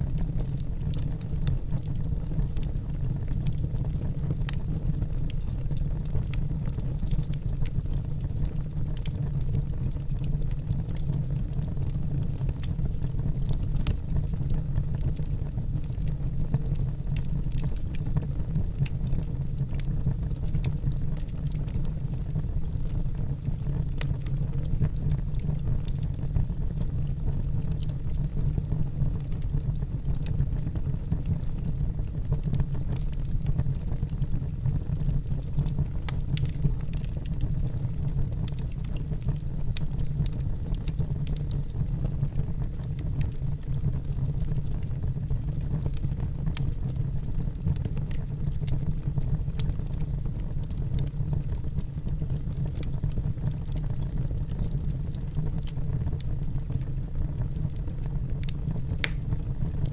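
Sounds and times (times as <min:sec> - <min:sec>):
campfire crackling: 0:00.0 - 0:59.9.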